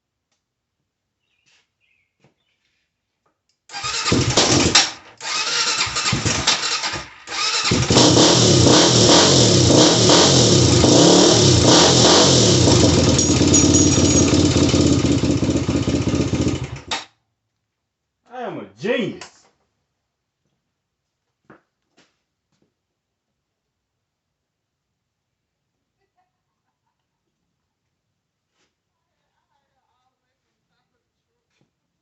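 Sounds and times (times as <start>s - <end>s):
engine starting and revving: 3.7s - 17.0s.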